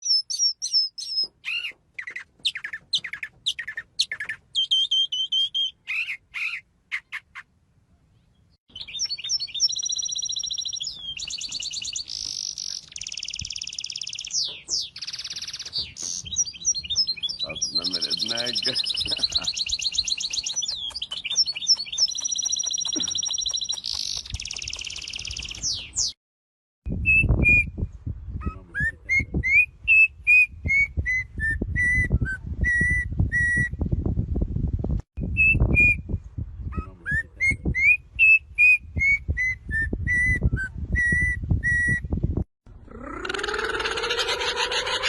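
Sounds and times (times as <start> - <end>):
bird trills and whistles: 0.0 - 7.4, 8.8 - 26.2, 36.7 - 42.0
bird whistled notes: 8.8 - 26.1, 37.8 - 42.0.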